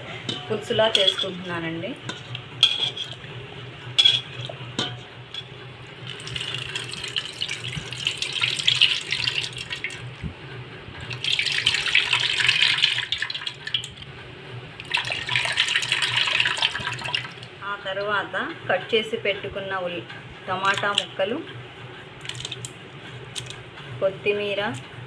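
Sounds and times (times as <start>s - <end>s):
water splashing in a bowl: 6.0s - 10.0s, 22.2s - 22.8s.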